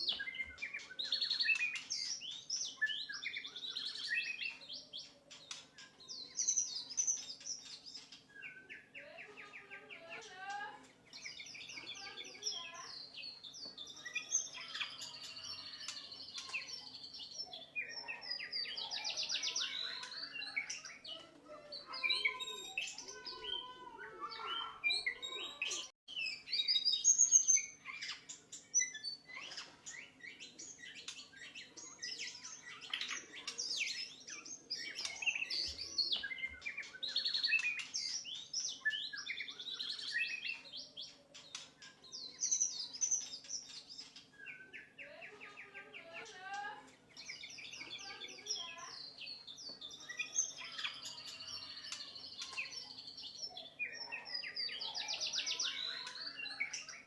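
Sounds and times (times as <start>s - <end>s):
bird singing whistles and trills: 0.0s - 9.0s, 24.3s - 45.0s.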